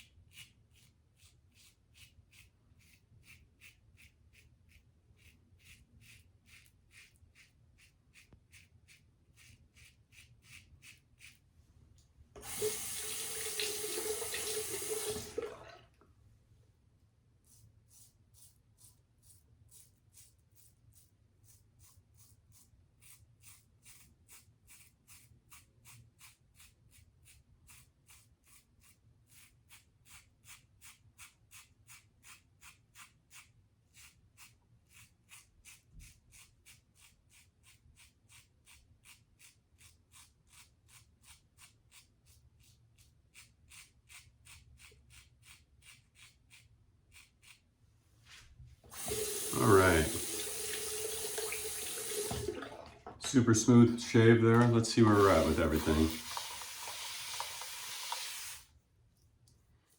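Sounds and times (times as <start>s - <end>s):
razor scraping across stubble: 0.0s - 11.4s, 17.5s - 47.6s, 53.4s - 58.6s.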